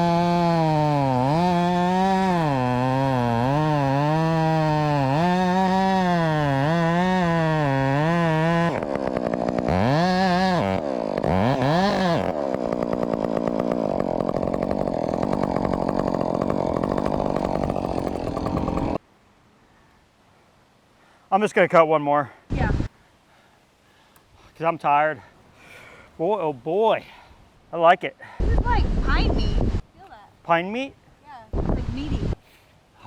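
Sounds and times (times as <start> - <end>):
chainsaw cutting wood: 0.0 - 19.0.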